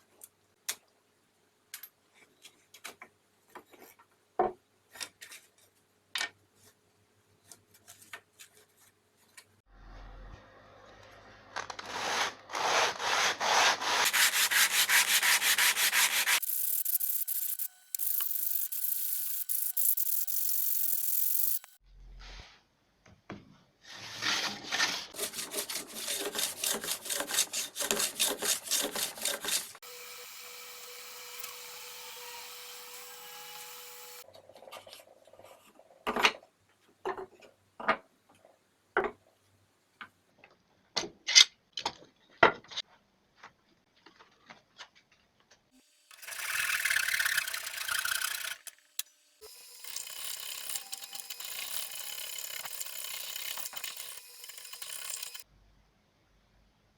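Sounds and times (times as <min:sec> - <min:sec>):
hand tool strokes on wood: 0:11.9 - 0:17.7.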